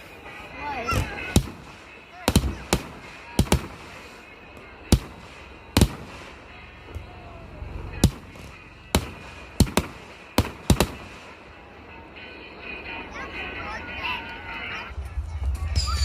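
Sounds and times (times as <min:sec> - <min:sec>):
fireworks bangs: 0:00.8 - 0:07.2, 0:07.9 - 0:12.0.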